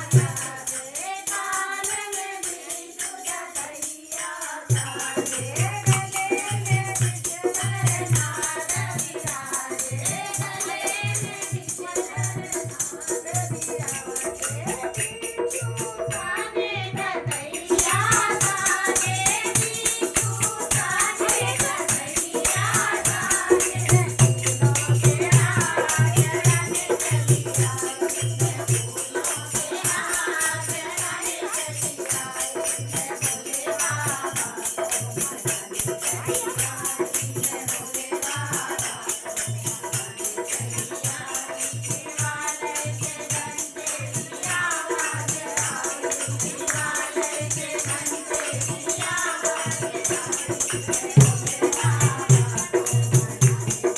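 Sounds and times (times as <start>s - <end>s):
shaker rattle: 17.4s - 53.9s.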